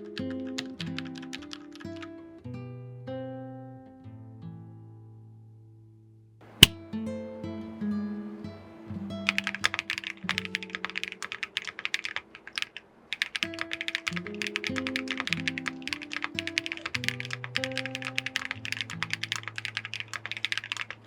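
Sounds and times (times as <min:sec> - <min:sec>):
typing on mechanical keyboard: 0:00.0 - 0:02.2, 0:09.3 - 0:21.0.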